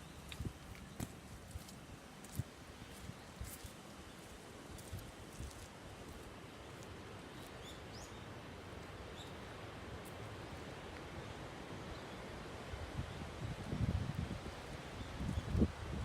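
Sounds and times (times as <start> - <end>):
low wind rumble: 11.5 - 16.0.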